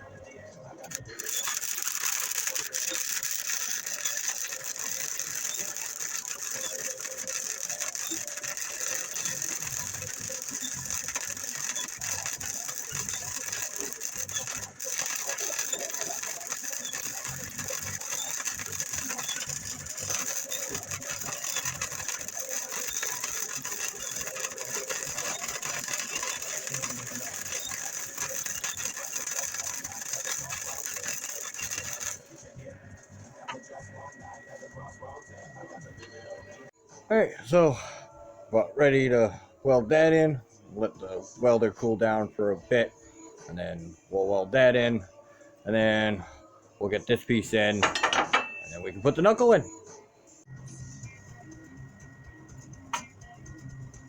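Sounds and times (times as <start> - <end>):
welding arc crackling: 0.8 - 32.5.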